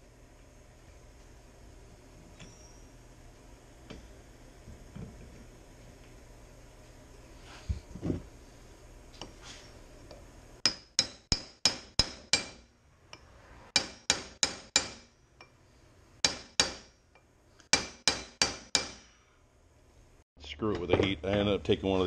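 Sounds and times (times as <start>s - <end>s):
hammer striking steel pin: 10.6s - 15.5s, 16.2s - 17.0s, 17.7s - 19.1s.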